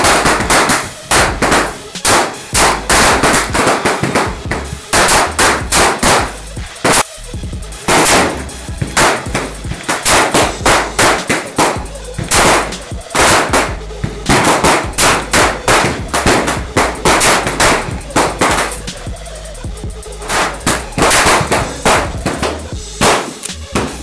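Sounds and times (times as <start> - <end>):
gunshots: 0.0 - 7.2, 7.8 - 19.2, 20.2 - 24.0.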